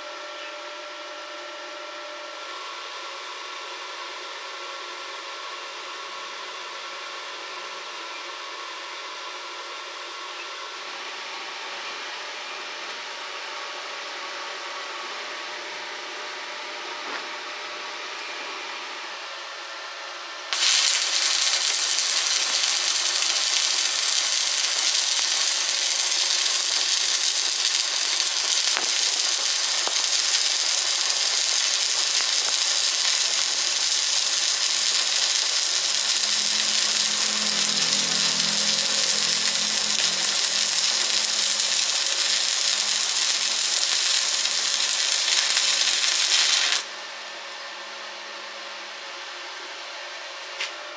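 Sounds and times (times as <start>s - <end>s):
welding arc crackling and hissing: 20.6s - 47.6s.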